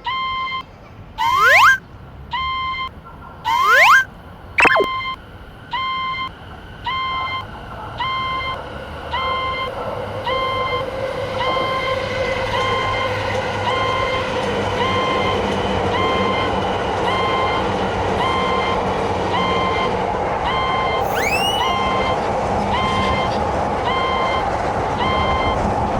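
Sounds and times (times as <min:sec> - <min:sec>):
railroad crossing alarm ringing: 0:15.0 - 0:22.2
passing train: 0:21.9 - 0:25.9.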